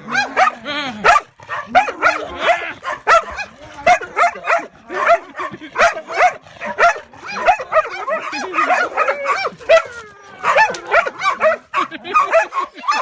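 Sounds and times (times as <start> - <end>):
dog barking and yipping: 0.0 - 13.0.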